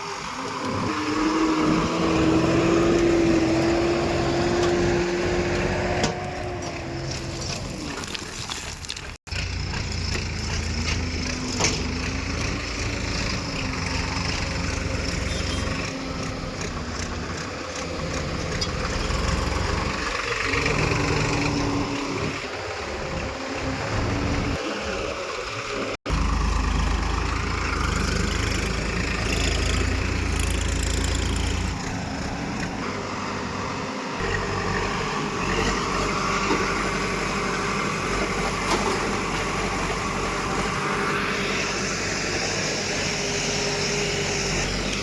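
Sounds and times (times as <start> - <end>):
heavy machinery diesel engine: 0.0 - 8.2, 9.0 - 45.0.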